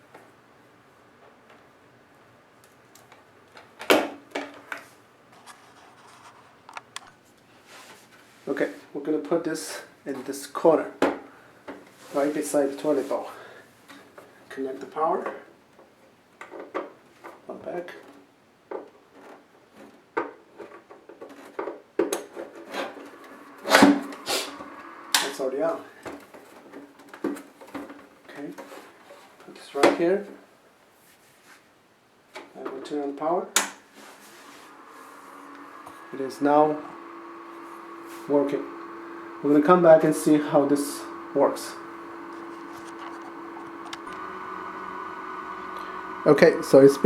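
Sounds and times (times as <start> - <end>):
cable handling knocks and clicks: 35.6 - 47.0.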